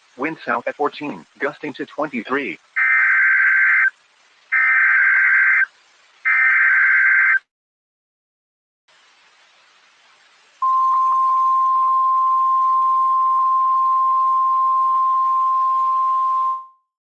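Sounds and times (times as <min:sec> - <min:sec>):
faint radio hiss: 0:00.0 - 0:07.4, 0:08.9 - 0:16.7
steady high alarm tone: 0:10.6 - 0:16.8.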